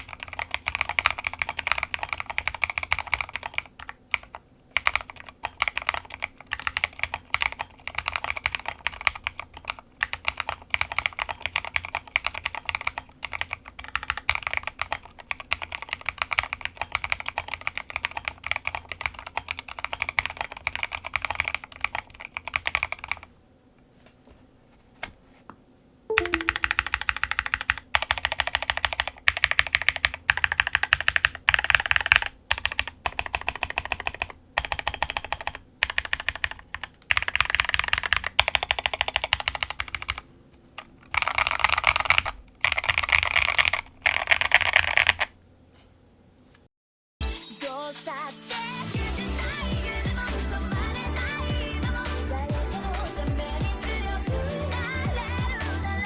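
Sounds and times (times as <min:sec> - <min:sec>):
mechanical keyboard typing: 0:00.0 - 0:23.3, 0:26.1 - 0:45.4.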